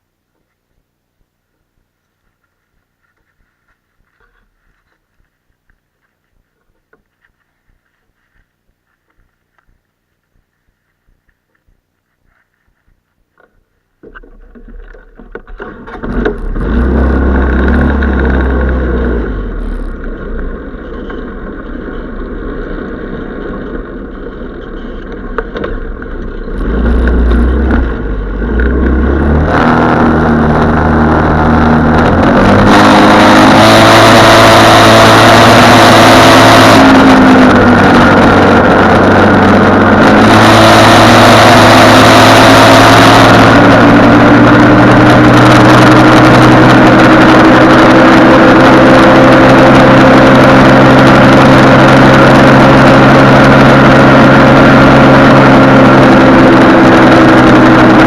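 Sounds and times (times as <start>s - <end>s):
snowmobile engine revving: 15.6s - 58.0s.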